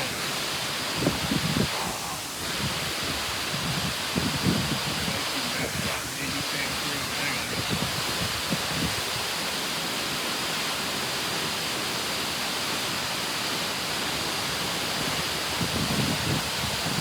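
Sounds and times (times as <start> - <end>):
waterfall roaring: 0.0 - 17.0.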